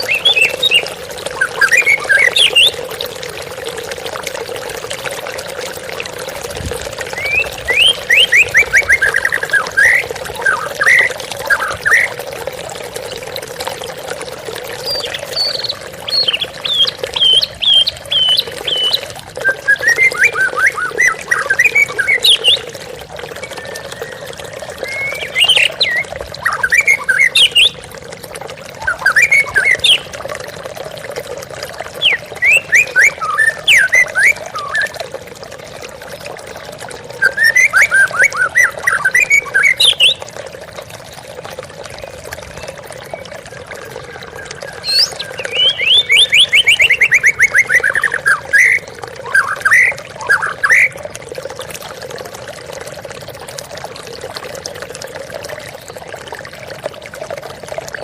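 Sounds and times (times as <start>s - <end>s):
bird singing whistled phrases: 14.9s - 22.6s, 23.4s - 27.8s, 32.0s - 35.0s, 37.2s - 40.2s, 44.4s - 50.9s
bird trill: 44.8s - 50.8s.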